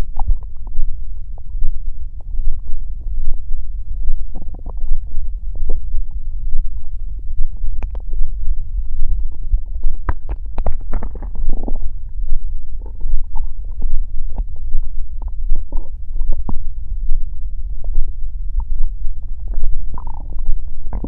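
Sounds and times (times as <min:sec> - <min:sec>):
stomach growling and gurgling: 0:00.0 - 0:21.0.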